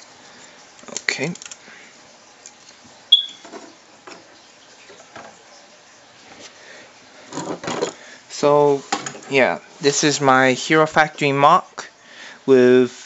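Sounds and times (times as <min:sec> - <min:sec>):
plastic parts clicking: 0:00.8 - 0:01.6.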